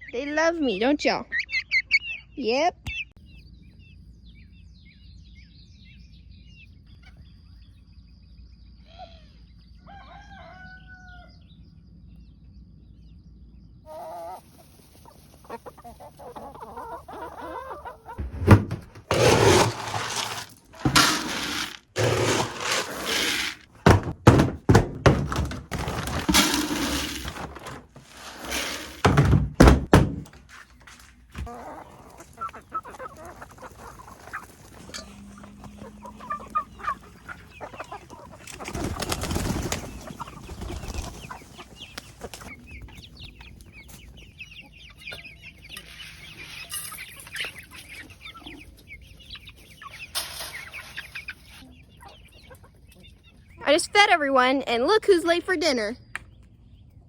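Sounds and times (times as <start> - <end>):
chicken calls: 0.0 - 3.0, 8.8 - 11.7, 13.8 - 30.0, 30.8 - 53.9
feed clattering and thudding: 18.2 - 30.4.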